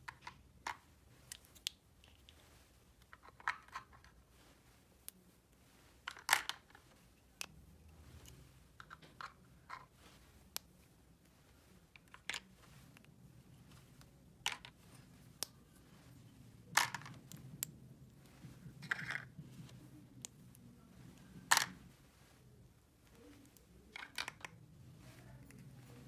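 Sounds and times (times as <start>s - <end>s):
plastic toy pieces clicking: 24.0s - 24.5s.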